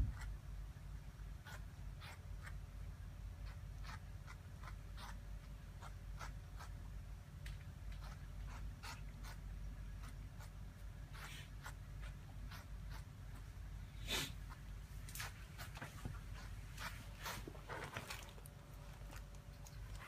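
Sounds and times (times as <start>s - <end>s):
cat scratching and rustling: 14.1s - 20.0s.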